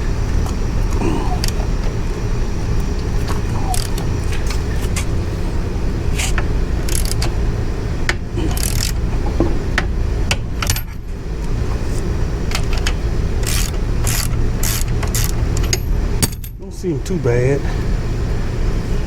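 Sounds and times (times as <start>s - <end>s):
steady low rumble: 0.0s - 19.0s
hand tools clinking on metal: 3.4s - 5.1s, 13.4s - 16.6s.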